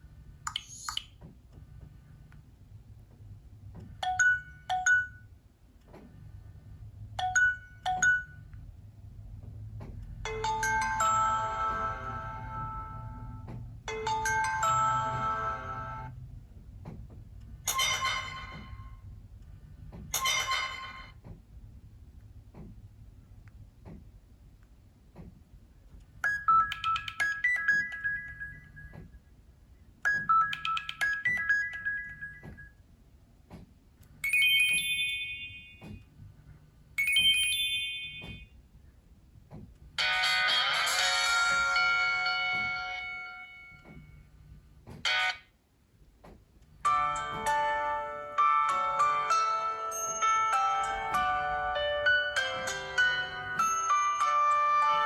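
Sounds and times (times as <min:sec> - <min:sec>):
bell-like ringtone: 0:10.3 - 0:13.1, 0:13.9 - 0:16.1, 0:26.3 - 0:28.9, 0:30.1 - 0:32.7, 0:34.2 - 0:35.9, 0:37.0 - 0:38.5, 0:48.4 - 0:55.0.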